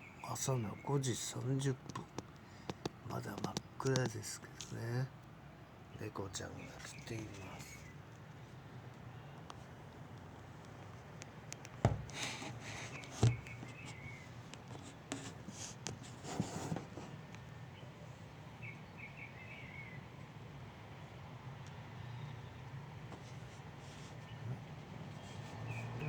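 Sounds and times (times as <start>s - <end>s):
sharp clicks: 1.8s - 4.8s
scratchy rustling: 11.8s - 17.4s.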